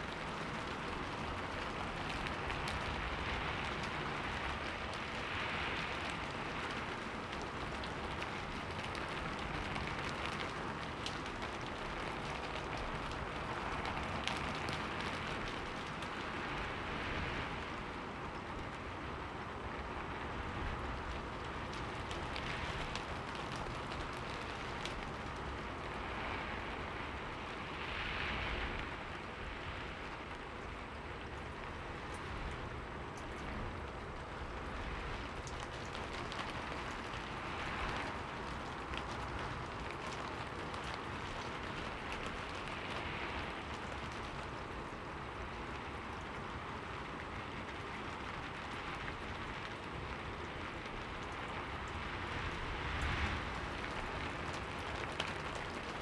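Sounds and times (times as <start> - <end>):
rain on a window pane: 0.0 - 56.0.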